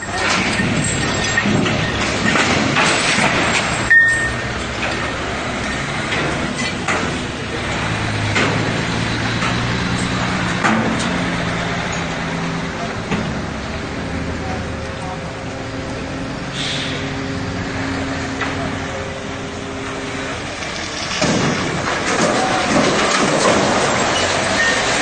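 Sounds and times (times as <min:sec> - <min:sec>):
people's voices: 0:00.0 - 0:02.7, 0:04.1 - 0:25.0
vehicle engine running: 0:00.0 - 0:25.0
broad hiss: 0:16.5 - 0:17.1.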